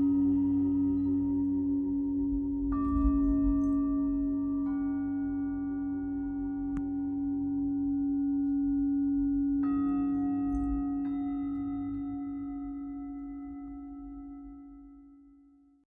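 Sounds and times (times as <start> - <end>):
singing bowls ringing: 0.0 - 15.9.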